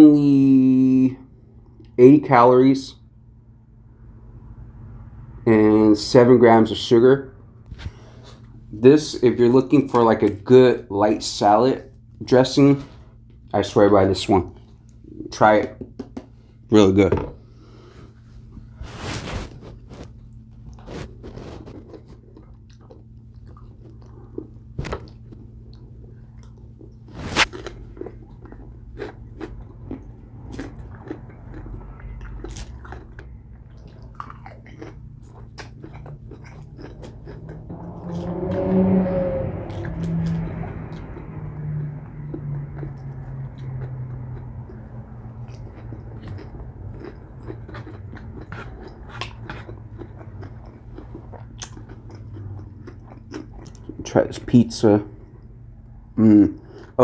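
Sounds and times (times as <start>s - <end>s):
muffled hum: 0.0s - 57.0s
chewing and crunching salad: 17.6s - 38.9s, 39.6s - 57.0s.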